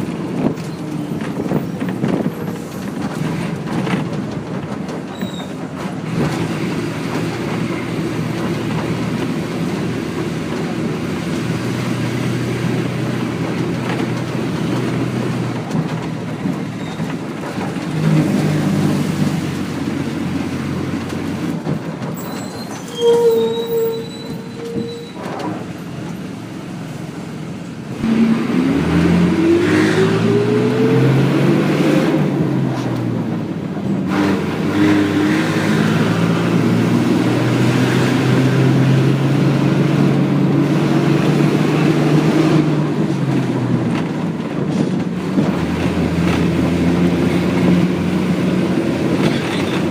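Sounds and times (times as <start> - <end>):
bus engine running: 0.0 - 49.9
road rumble: 0.0 - 49.9.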